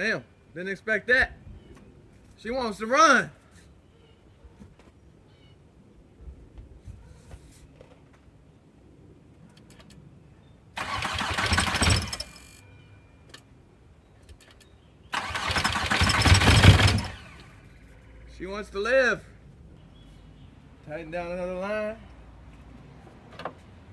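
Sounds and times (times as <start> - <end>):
diesel engine cranking: 10.8 - 12.7, 15.1 - 17.8.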